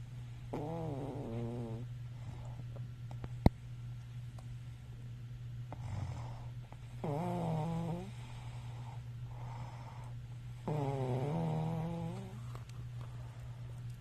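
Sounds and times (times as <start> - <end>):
steady low hum: 0.0 - 14.0
person snoring: 0.5 - 1.8, 5.8 - 8.3, 10.6 - 12.4.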